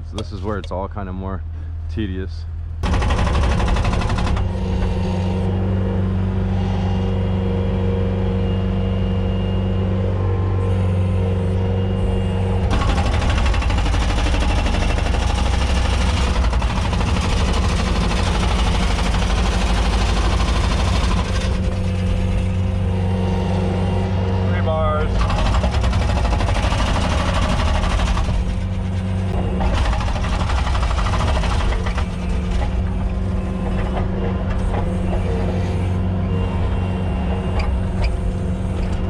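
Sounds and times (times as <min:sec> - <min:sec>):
vehicle engine humming: 0:00.0 - 0:39.0
road noise rush: 0:20.6 - 0:39.0.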